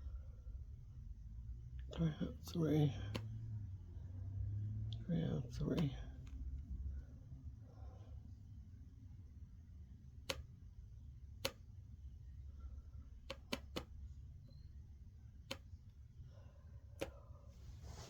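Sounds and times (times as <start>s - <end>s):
low steady hum: 0.0s - 18.0s
sharp clicks: 13.2s - 14.0s.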